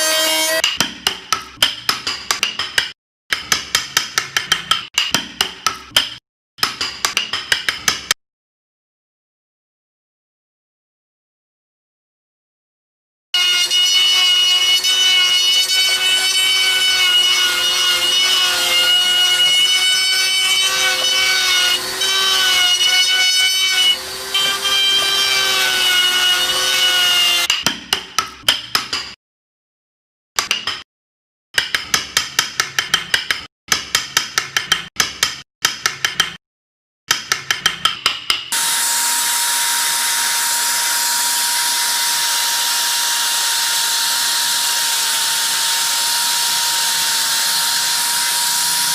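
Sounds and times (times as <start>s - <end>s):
power carving tool whine: 13.4s - 27.5s, 38.6s - 48.9s
hissing power tool: 23.5s - 25.9s, 38.6s - 48.9s.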